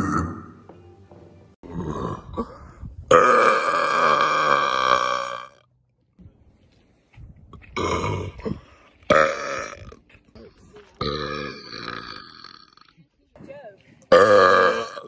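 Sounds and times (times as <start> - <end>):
person burping: 0.0 - 0.6, 1.6 - 5.6, 7.7 - 10.0, 11.0 - 13.0, 14.1 - 15.0.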